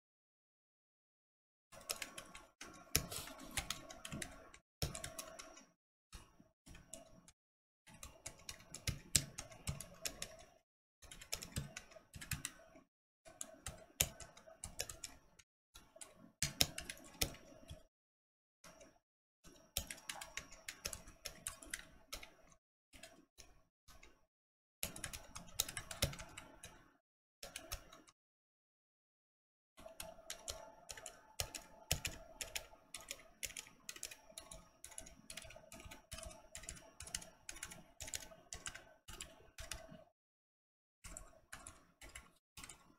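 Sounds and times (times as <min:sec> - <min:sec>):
typing on mechanical keyboard: 0:01.8 - 0:05.7, 0:08.0 - 0:17.9, 0:19.6 - 0:23.2, 0:24.8 - 0:28.2, 0:29.8 - 0:40.0, 0:41.0 - 0:42.9.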